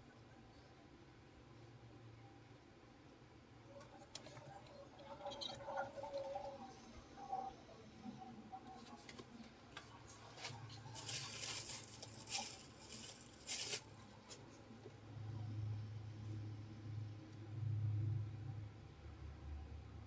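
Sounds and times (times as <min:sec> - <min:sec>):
low steady hum: 0:00.0 - 0:20.0
light scratching and scraping: 0:03.8 - 0:14.7.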